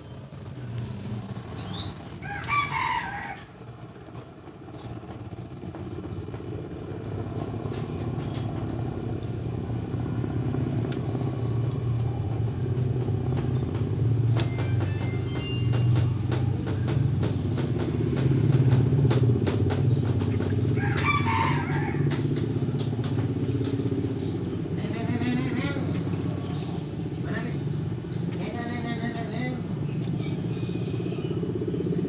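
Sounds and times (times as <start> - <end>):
low engine-like rumble: 0.0 - 32.0
rooster crow: 2.2 - 3.6, 20.7 - 22.3.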